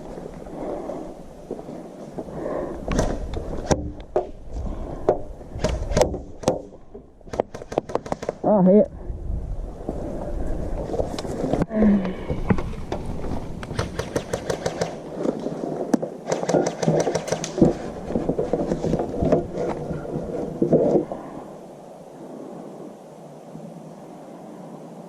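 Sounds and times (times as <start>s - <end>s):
airsoft guns firing: 13.7s - 15.0s, 16.2s - 17.6s.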